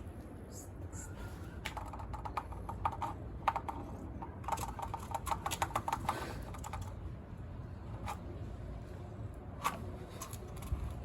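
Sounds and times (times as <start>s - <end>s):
rapid irregular clicking: 1.7s - 7.0s.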